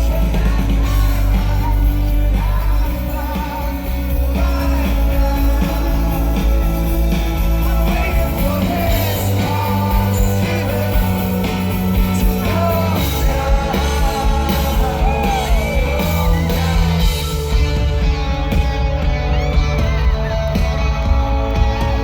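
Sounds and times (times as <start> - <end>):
lead singer singing: 0.0 - 22.0
live rock band: 0.0 - 22.0.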